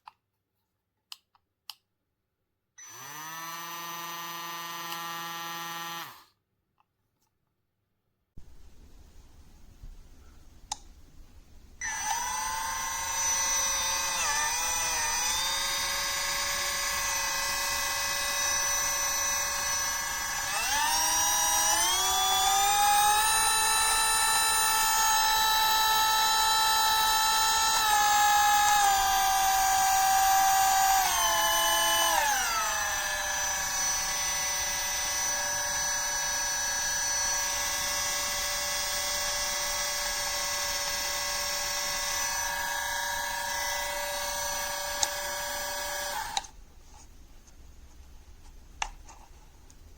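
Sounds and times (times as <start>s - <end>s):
rotary tool whining: 2.8s - 6.3s, 11.8s - 46.5s.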